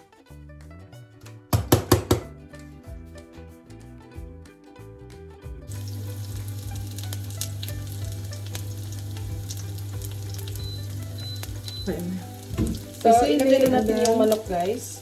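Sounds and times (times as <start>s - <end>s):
oil sizzling in a pan: 5.7s - 15.0s.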